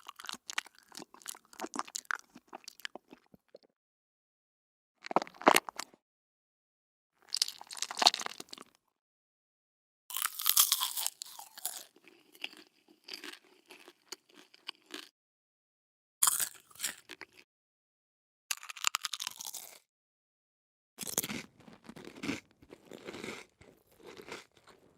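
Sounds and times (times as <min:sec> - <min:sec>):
person crunching food: 0:00.0 - 0:03.7, 0:05.0 - 0:06.0, 0:07.2 - 0:08.8, 0:10.1 - 0:15.1, 0:16.2 - 0:17.4, 0:18.5 - 0:19.9, 0:21.0 - 0:24.9.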